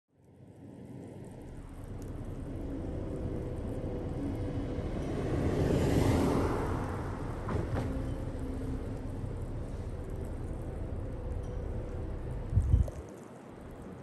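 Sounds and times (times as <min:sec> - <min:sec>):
steady low rumble: 0:00.2 - 0:14.0
vehicle driving past: 0:01.5 - 0:12.6.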